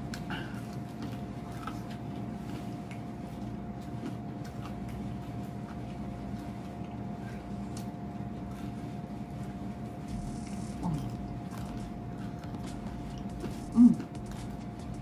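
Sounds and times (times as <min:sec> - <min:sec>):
low electrical hum: 0:00.0 - 0:15.0
person chewing crispy food: 0:00.0 - 0:15.0.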